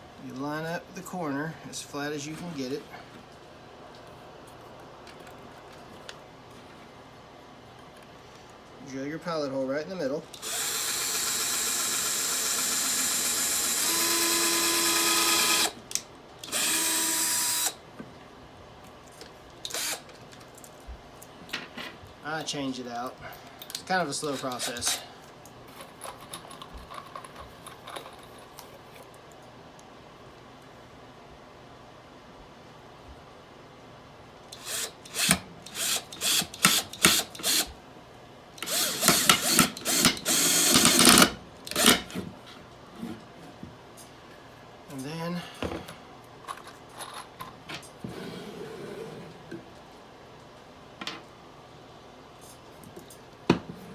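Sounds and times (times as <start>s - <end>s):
power drill whirring into wood: 10.4s - 15.8s, 16.4s - 17.8s, 19.7s - 20.0s, 24.4s - 25.0s, 34.6s - 37.7s, 38.6s - 42.2s.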